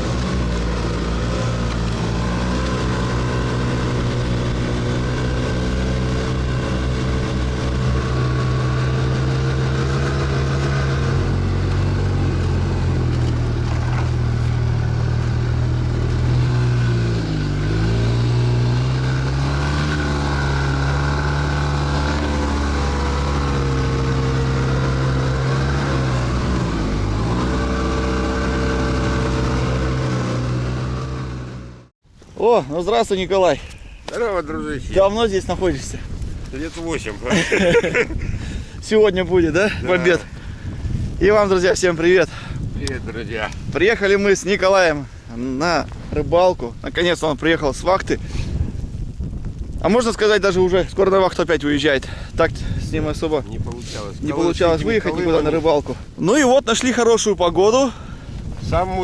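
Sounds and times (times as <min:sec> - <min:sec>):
vehicle engine running: 0:00.0 - 0:31.9.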